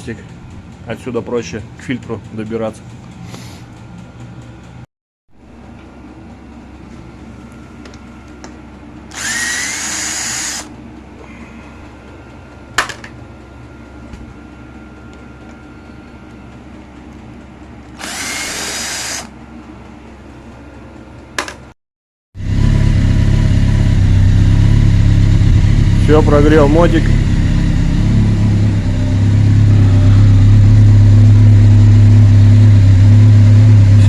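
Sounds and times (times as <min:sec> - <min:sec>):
power drill whining: 0:09.1 - 0:10.7, 0:18.0 - 0:19.3.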